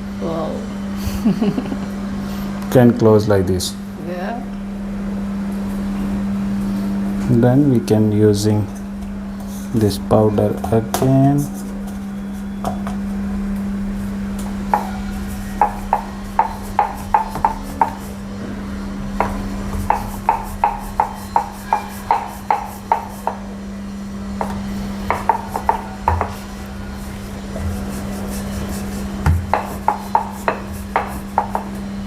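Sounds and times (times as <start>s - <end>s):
steady low hum: 0.0s - 32.0s
rolling pin knocking on board: 14.7s - 15.0s, 15.6s - 18.0s, 19.2s - 23.4s, 24.4s - 26.4s, 29.2s - 31.7s.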